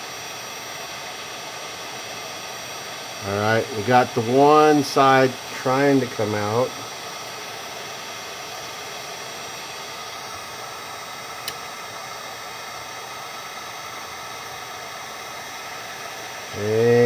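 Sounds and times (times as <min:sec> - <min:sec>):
heat gun blowing hot air: 0:00.0 - 0:17.0
short click: 0:11.4 - 0:11.7.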